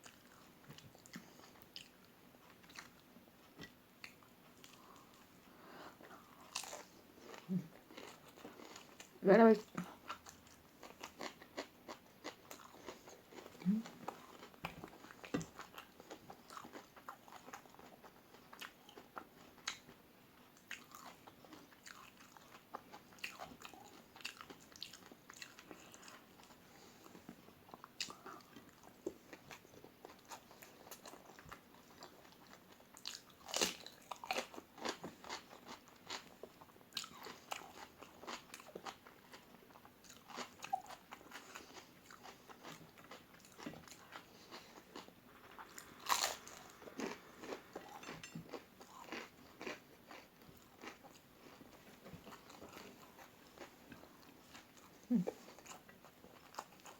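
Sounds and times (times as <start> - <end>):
crunchy chewing: 0.0 - 20.0, 20.6 - 56.9.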